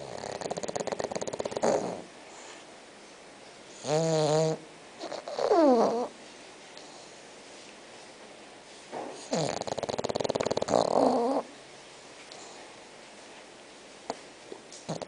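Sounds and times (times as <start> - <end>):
dog snoring: 0.0 - 2.6, 3.7 - 6.1, 9.2 - 11.5.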